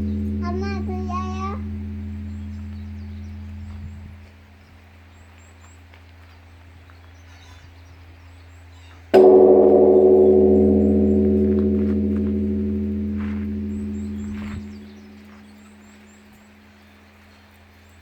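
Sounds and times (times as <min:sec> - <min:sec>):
bell ringing hum: 0:00.0 - 0:04.1, 0:09.2 - 0:17.0
temple bell strike: 0:00.0 - 0:04.2, 0:09.2 - 0:16.9.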